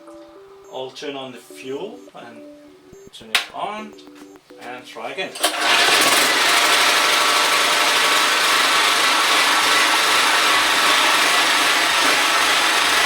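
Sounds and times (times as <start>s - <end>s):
portable generator engine running: 5.4s - 13.0s.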